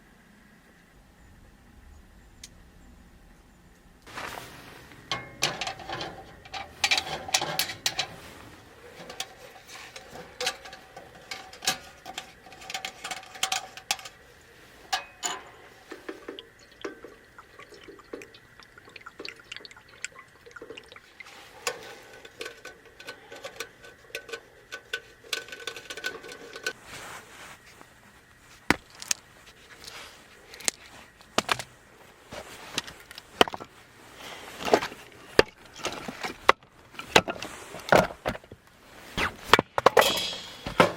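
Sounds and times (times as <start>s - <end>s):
clicks and knocks of handling: 4.9s - 19.4s, 20.0s - 26.8s, 28.7s - 33.7s
liquid pouring and trickling: 15.4s - 24.2s.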